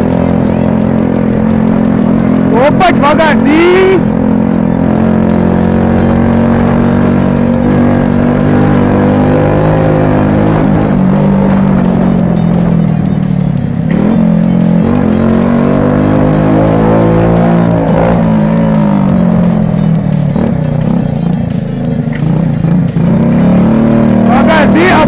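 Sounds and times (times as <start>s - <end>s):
moped engine revving: 0.0s - 25.0s.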